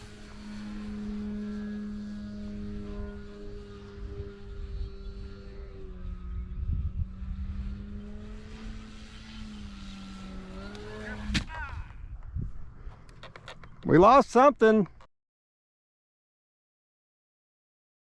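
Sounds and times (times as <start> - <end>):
model plane electric motor droning: 0.0 - 11.5
sharp crack: 10.5 - 11.8.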